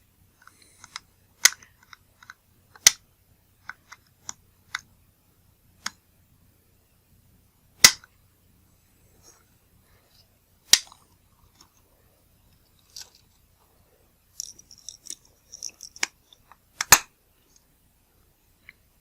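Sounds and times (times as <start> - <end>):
metal lens parts clicking: 0.4 - 3.0, 7.8 - 8.1, 14.4 - 17.1.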